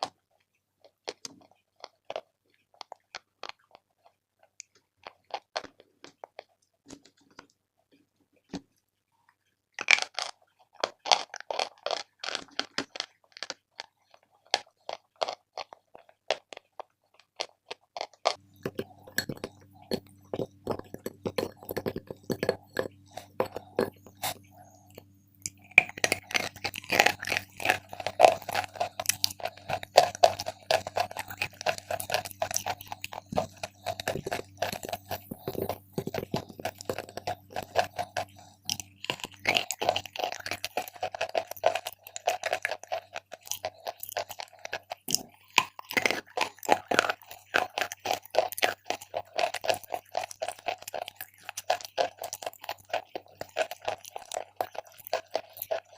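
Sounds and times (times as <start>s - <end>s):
person crunching chalk: 18.3s - 55.9s
steady low hum: 18.4s - 48.3s.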